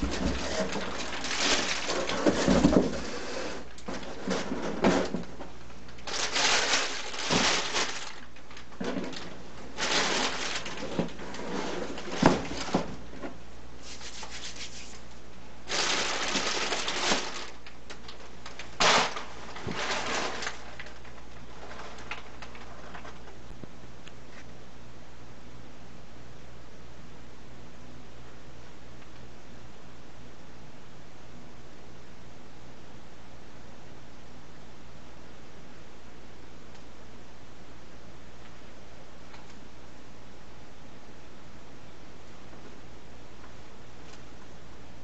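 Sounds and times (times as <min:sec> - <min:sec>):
packaging rustling: 0:00.0 - 0:13.1, 0:15.6 - 0:23.4.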